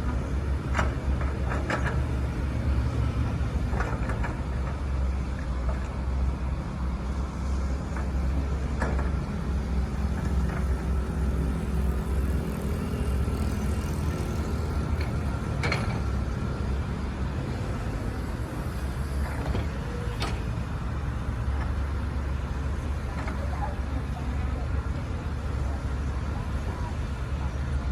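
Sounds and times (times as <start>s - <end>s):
excavator diesel engine drone: 0.0s - 27.9s.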